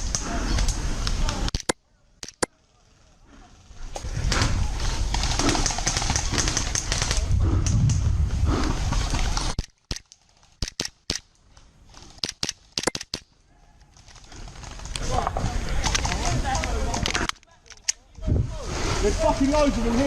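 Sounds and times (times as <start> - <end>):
airsoft guns firing: 5.1 - 7.2.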